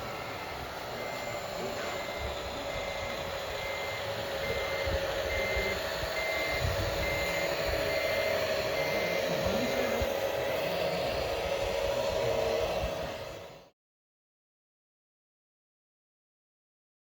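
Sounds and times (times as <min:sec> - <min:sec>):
high reversing beeps: 0:00.0 - 0:11.6
model motor whine: 0:00.0 - 0:13.7.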